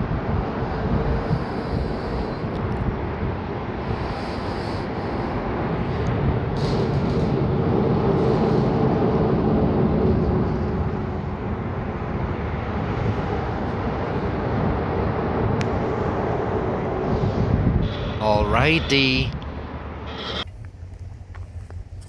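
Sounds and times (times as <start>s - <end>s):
wind noise on microphone: 0.0s - 4.4s.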